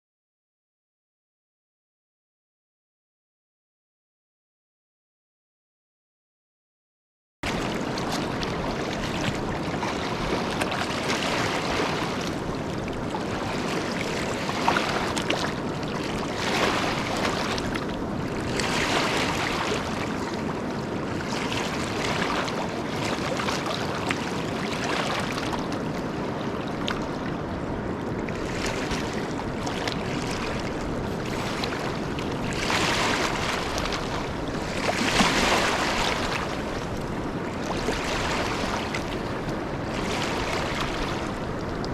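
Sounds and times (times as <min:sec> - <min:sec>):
river water rushing: 0:16.1 - 0:26.7, 0:28.4 - 0:41.9.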